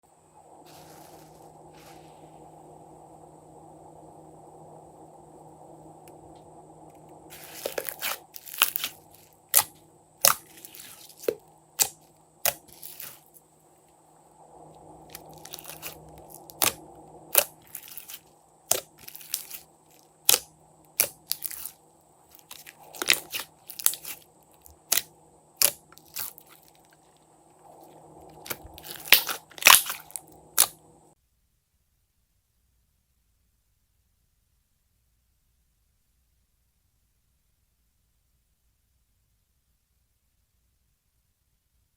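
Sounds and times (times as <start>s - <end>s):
faint steady hum: 0.0s - 41.9s
slime crunching and crackling: 7.3s - 13.3s, 15.1s - 27.1s, 27.8s - 30.8s.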